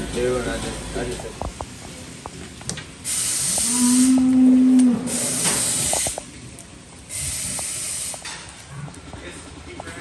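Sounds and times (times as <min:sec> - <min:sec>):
short bursts of hissing: 0:03.0 - 0:04.1, 0:05.1 - 0:06.2, 0:07.1 - 0:08.3
cow mooing: 0:03.5 - 0:05.4.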